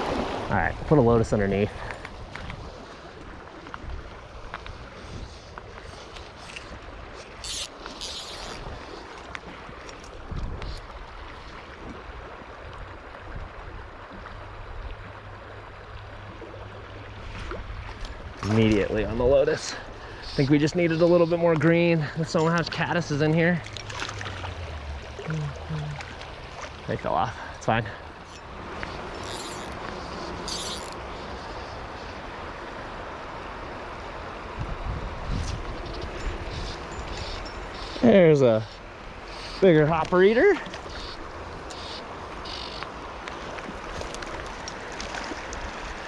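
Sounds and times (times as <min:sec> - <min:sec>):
river water flowing: 0:00.0 - 0:46.0.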